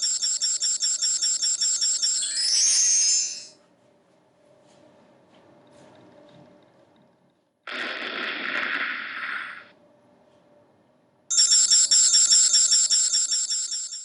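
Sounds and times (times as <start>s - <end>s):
high-pitched ringing trill: 0.0s - 3.6s.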